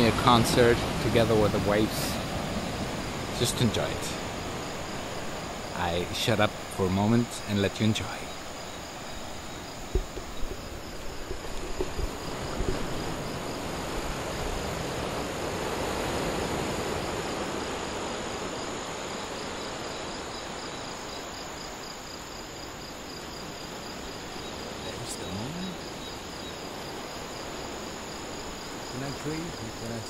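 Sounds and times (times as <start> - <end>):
night insects chorus: 0.0 - 30.0
ocean surf: 0.0 - 30.0
low thumps: 9.8 - 13.3.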